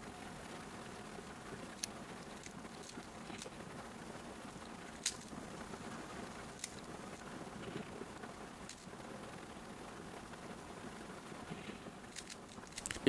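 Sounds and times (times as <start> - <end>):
puzzle cube plastic rustle: 1.5 - 3.8, 4.6 - 8.0, 8.6 - 9.0, 11.5 - 13.0
sharp plastic clicks: 1.6 - 3.6, 4.8 - 5.4, 6.3 - 7.3, 12.1 - 13.0.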